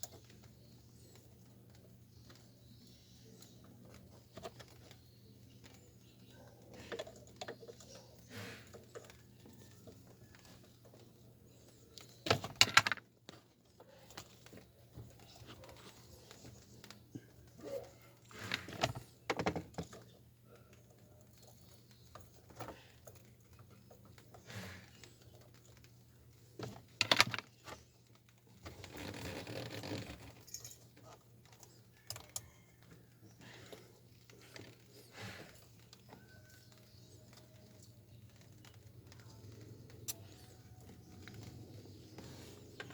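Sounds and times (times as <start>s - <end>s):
small parts clicking and rattling: 11.9s - 15.8s, 25.0s - 42.9s
clicks and rattles of parts: 12.0s - 15.8s, 16.6s - 24.2s, 26.6s - 33.0s.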